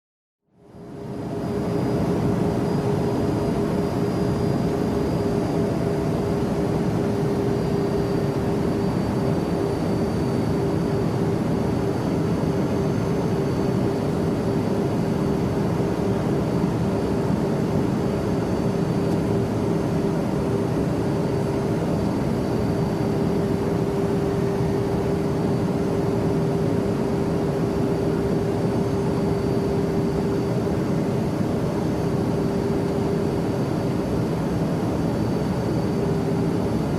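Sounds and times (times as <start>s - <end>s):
constant hum: 0.5s - 36.9s
faint high whine: 0.5s - 36.9s
jet engine and airflow rush: 0.5s - 36.9s.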